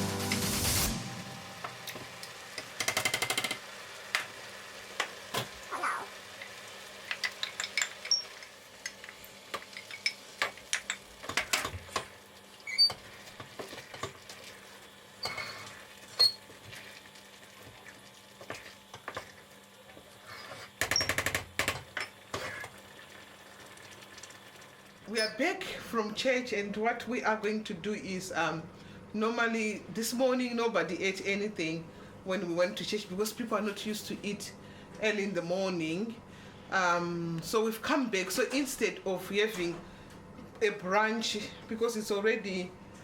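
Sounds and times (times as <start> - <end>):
metal utensils clinking on pots: 7.1 - 8.4
faint steady hum: 21.6 - 43.0.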